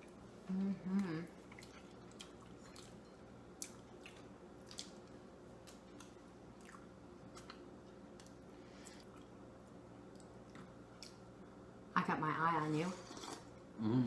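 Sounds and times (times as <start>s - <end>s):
room hum: 0.0s - 14.0s
chewing with wet mouth clicks: 1.0s - 9.4s, 10.0s - 11.2s.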